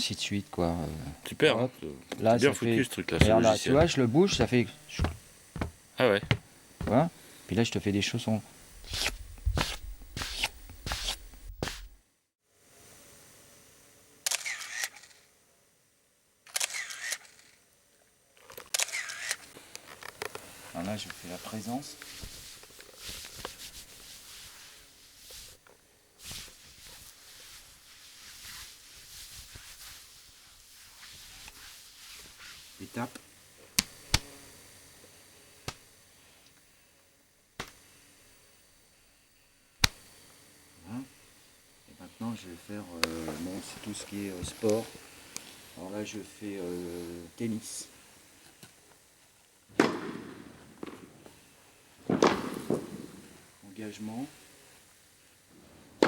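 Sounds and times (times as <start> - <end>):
footsteps in slippers: 3.2 - 7.2, 8.7 - 12.0, 43.1 - 45.0.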